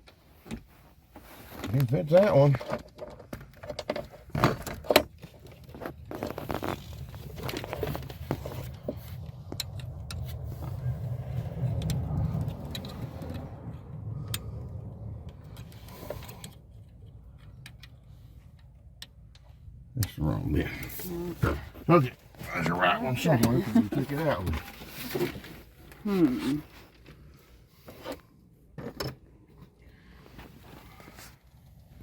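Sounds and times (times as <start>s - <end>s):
steady low rumble: 6.0s - 26.0s.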